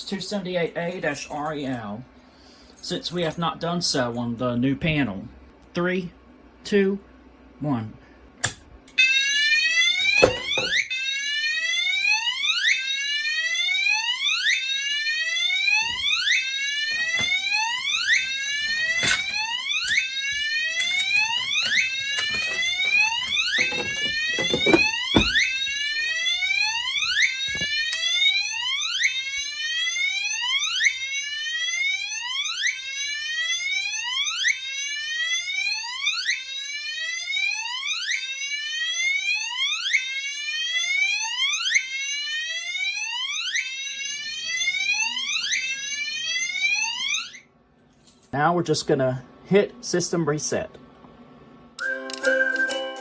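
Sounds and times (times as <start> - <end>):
alarm repeating rising tone: 9.0 - 28.4
knocks: 21.6 - 25.5.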